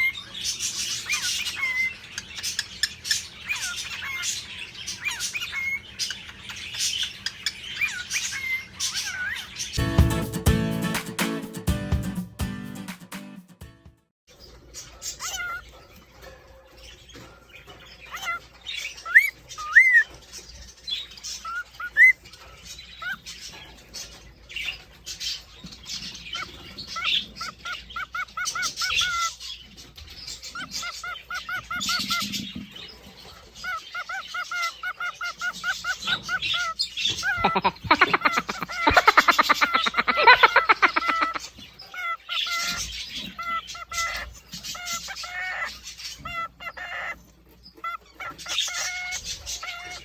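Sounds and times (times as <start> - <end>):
cockatiels whistling: 0.0 - 9.8, 18.0 - 20.1, 33.6 - 50.0
birds chattering: 0.0 - 9.9, 14.3 - 50.0.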